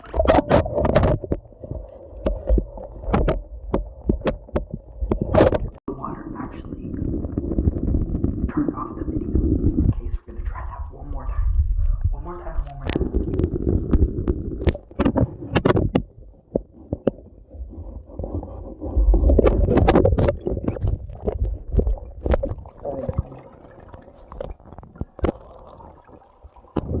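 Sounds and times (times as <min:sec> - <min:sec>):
knocks and scrapes: 0:00.0 - 0:05.8, 0:12.8 - 0:22.8
water gurgling and splashing: 0:00.0 - 0:27.0.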